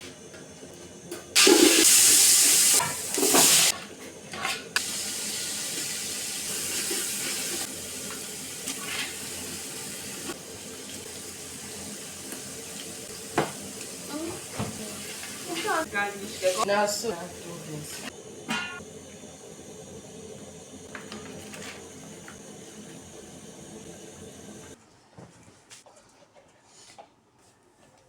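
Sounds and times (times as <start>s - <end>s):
running water hiss: 1.4s - 3.7s, 4.8s - 24.8s
water gushing: 1.4s - 3.7s, 4.8s - 18.2s.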